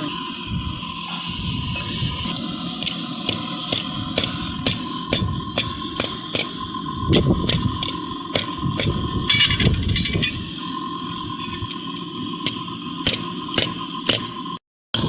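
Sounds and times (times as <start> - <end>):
steady hum: 0.0 - 15.0
hammer striking steel on anvil: 2.3 - 10.4, 12.4 - 14.5.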